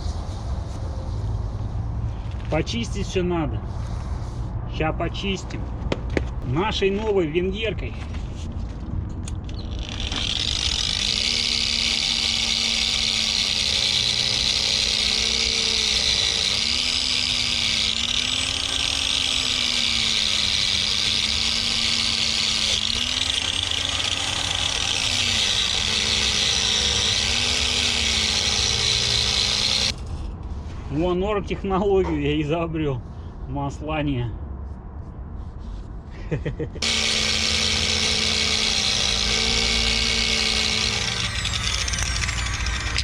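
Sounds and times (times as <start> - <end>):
electric grinder on metal: 9.7 - 30.0, 36.8 - 43.0.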